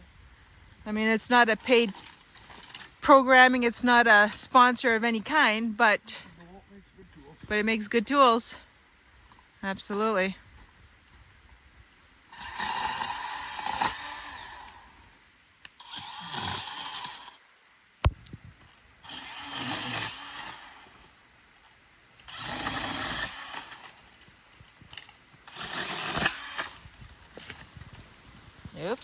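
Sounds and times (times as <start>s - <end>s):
pole saw cutting branches: 12.3s - 15.0s, 15.7s - 17.4s, 19.0s - 21.2s, 22.2s - 24.2s, 25.0s - 27.7s.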